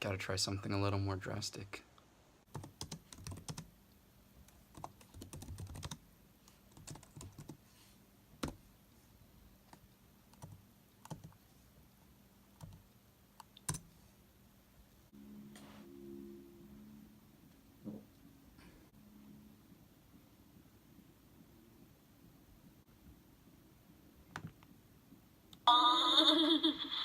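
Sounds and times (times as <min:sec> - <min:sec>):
computer keyboard typing: 0:02.5 - 0:03.7, 0:04.4 - 0:06.0, 0:06.7 - 0:07.6, 0:09.7 - 0:11.4, 0:12.6 - 0:12.8, 0:13.4 - 0:13.9.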